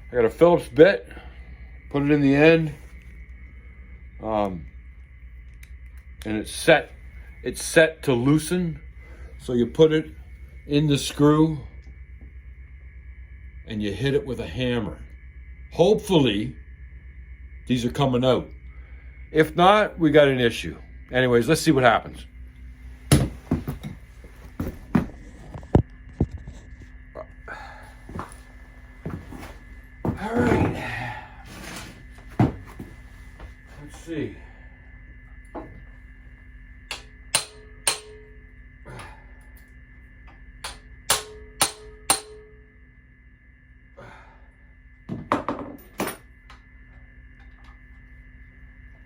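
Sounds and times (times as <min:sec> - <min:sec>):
hammer striking metal: 0:36.9 - 0:38.4, 0:40.6 - 0:42.7.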